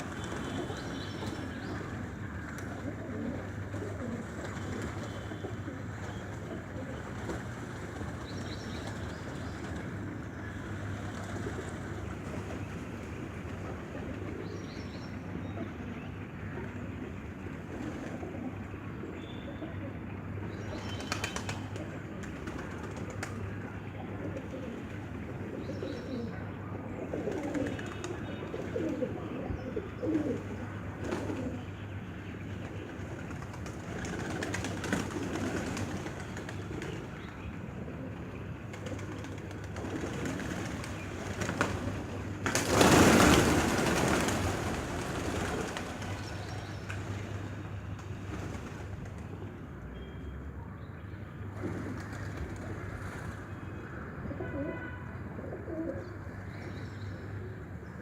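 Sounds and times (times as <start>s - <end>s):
pigeons cooing: 0.0s - 9.7s, 20.7s - 31.8s, 54.3s - 54.8s, 55.4s - 56.2s.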